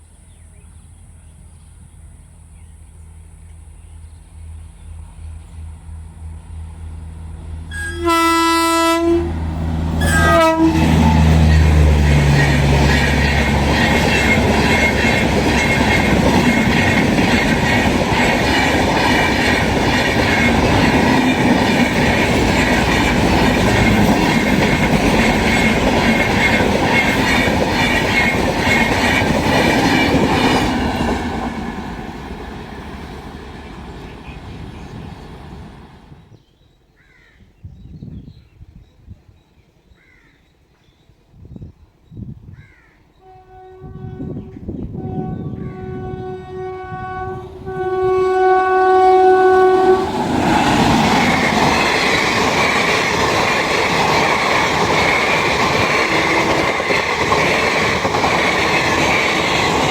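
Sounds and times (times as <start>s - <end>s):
locomotive engine rumbling: 0.6s - 36.3s, 44.2s - 59.9s
train horn: 7.7s - 18.0s, 43.2s - 50.6s
train wheels clattering on rails: 10.8s - 35.9s, 50.0s - 59.9s.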